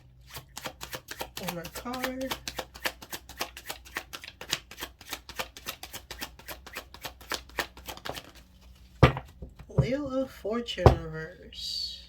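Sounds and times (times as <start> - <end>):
cards being shuffled: 0.2 - 9.7.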